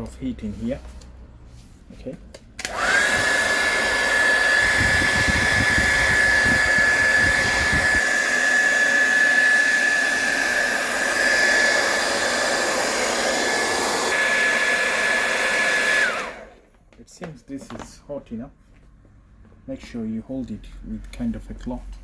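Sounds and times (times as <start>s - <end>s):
hair dryer running: 2.6s - 16.6s.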